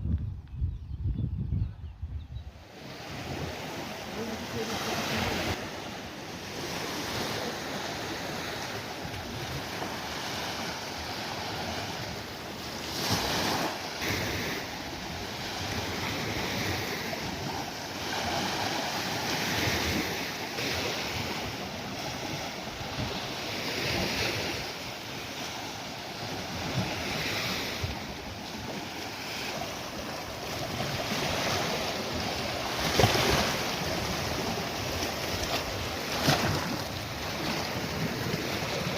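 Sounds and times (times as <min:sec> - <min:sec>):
wind buffeting microphone: 0:00.0 - 0:03.6
sea waves breaking on beach: 0:02.6 - 0:38.9.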